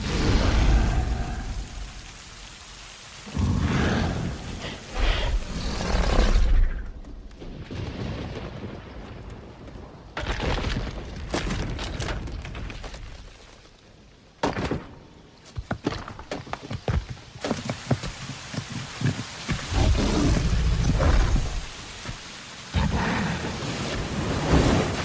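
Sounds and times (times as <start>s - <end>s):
hiss: 0.0s - 7.0s, 17.4s - 25.0s.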